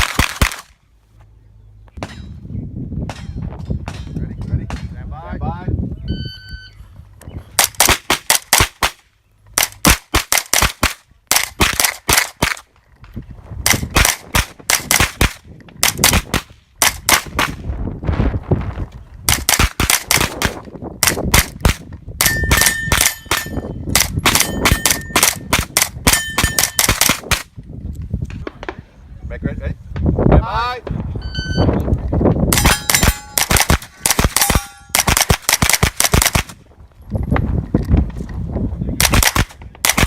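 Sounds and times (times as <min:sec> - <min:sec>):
steel plates ringing: 0:22.2 - 0:23.8, 0:32.6 - 0:33.4, 0:34.4 - 0:35.0
shot timer beep: 0:31.2 - 0:31.7
carbine firing rapid shots: 0:32.6 - 0:36.6, 0:39.0 - 0:40.0.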